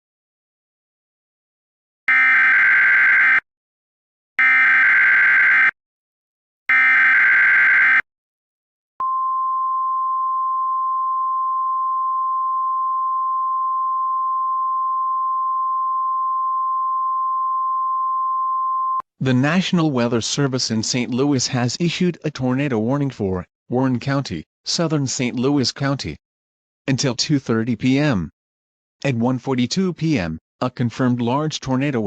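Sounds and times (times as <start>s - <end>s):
steady warning alarm tone: 2.1s - 3.4s, 4.4s - 5.8s, 6.7s - 8.1s.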